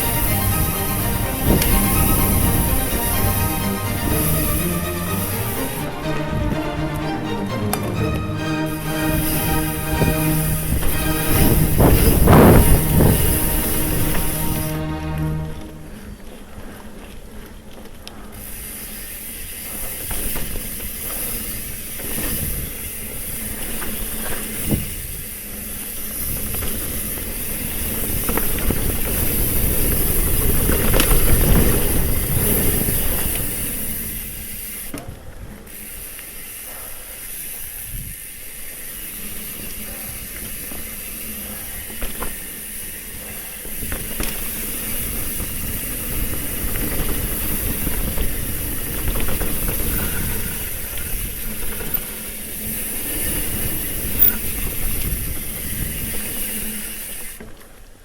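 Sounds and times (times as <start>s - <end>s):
wind rush on microphone: 10.0s - 14.6s
bike rattling over bumps: 16.2s - 58.0s.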